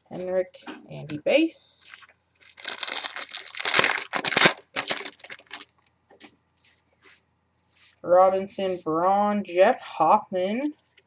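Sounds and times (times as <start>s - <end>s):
wrapper tearing and crinkling: 1.8s - 5.8s.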